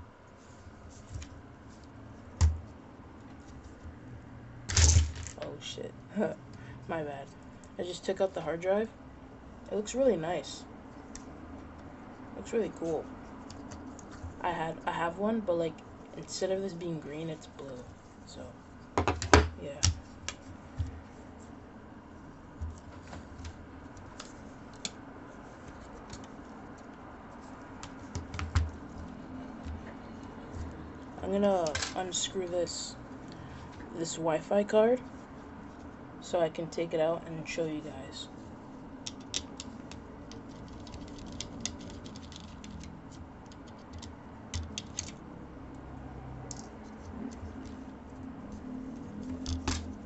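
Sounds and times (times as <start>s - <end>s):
small tools clicking and tapping: 39.0s - 45.2s.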